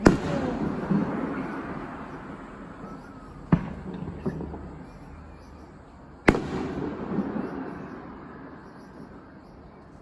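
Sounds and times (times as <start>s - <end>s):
sharp firework bang: 0.0s - 2.0s, 6.3s - 7.7s
small firework crack: 0.0s - 2.2s, 6.2s - 8.3s
fireworks bursting: 0.0s - 5.2s, 6.2s - 9.6s.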